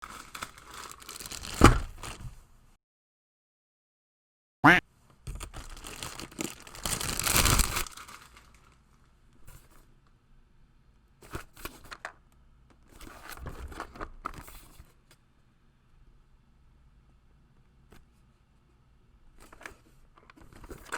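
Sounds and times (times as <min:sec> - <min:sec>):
packaging tearing and crinkling: 0:00.0 - 0:02.2, 0:05.3 - 0:08.8.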